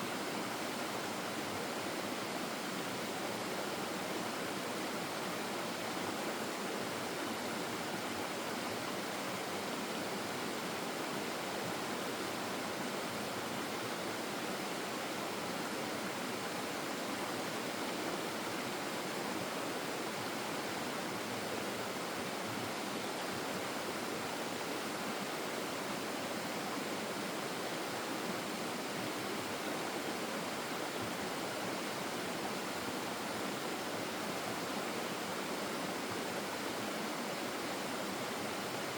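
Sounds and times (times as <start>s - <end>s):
stream water rushing: 0.0s - 38.9s.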